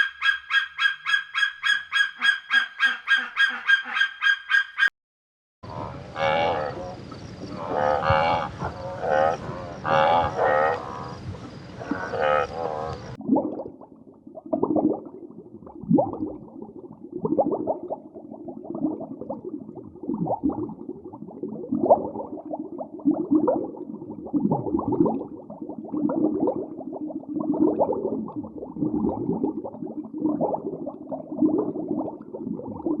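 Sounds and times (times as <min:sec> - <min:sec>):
low animal calls: 0:05.7 - 0:13.1.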